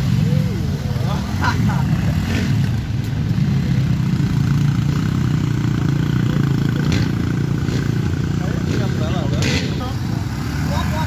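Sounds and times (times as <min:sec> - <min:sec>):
motorcycle engine running at low revs: 0:00.0 - 0:11.0.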